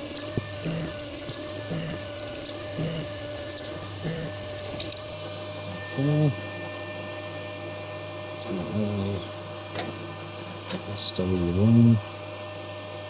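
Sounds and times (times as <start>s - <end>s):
lathe tool cutting hiss: 0.0s - 5.1s
lathe motor hum: 0.0s - 5.9s.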